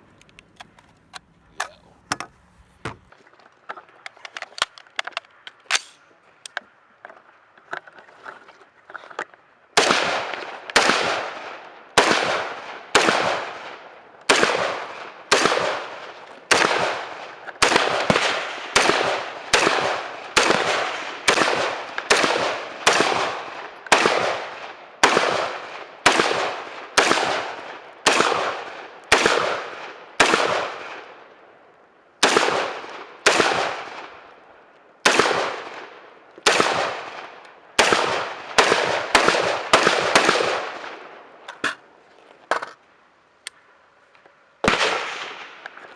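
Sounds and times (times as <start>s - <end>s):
quiet pops: 0.0s - 3.1s.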